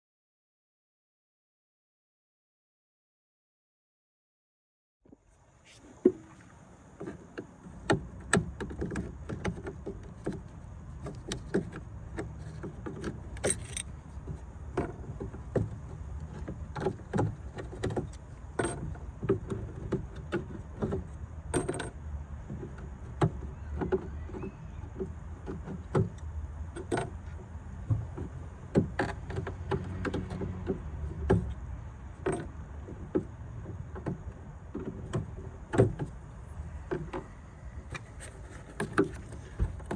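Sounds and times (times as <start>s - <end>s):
low steady rumble: 5.2s - 39.9s
metal tools clinking and knocking: 13.4s - 13.9s.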